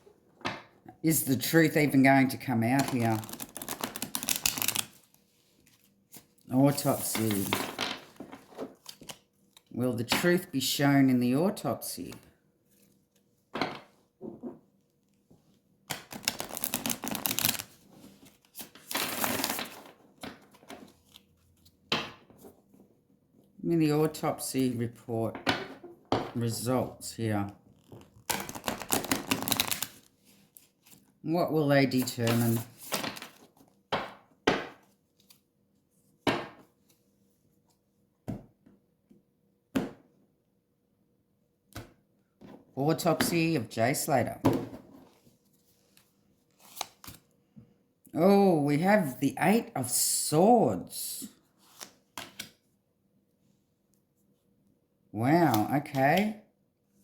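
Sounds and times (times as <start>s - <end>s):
cards being shuffled: 2.8s - 9.7s, 15.9s - 21.7s, 27.8s - 31.1s, 31.9s - 33.7s, 45.9s - 47.2s.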